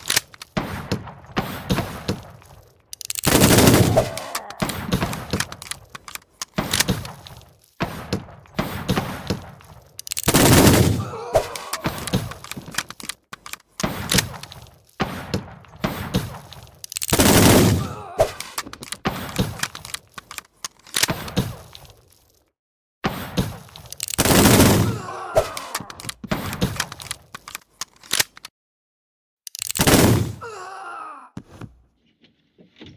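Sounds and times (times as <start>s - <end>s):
rapid gunshots with echoes: 0.5s - 2.4s, 3.2s - 5.6s, 7.8s - 9.6s, 10.2s - 12.4s, 15.0s - 16.5s, 17.1s - 19.6s, 24.2s - 25.2s.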